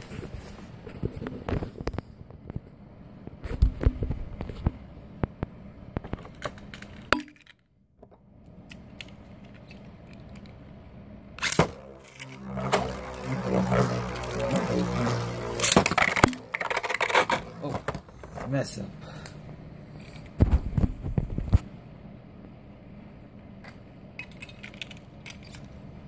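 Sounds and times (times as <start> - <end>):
low hum: 10.4 - 21.2.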